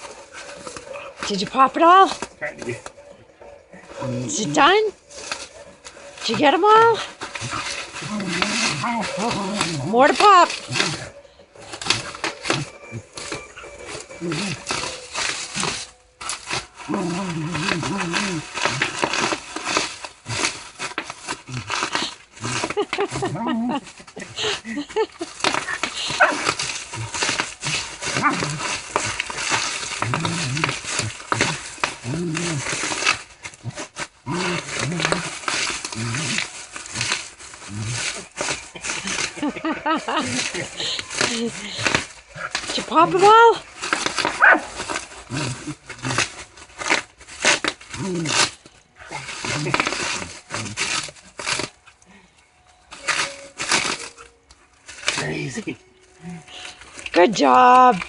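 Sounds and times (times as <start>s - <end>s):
bubble wrap popping: 0.0s - 3.0s, 3.8s - 58.0s
dog growling: 0.0s - 15.9s, 16.8s - 43.4s.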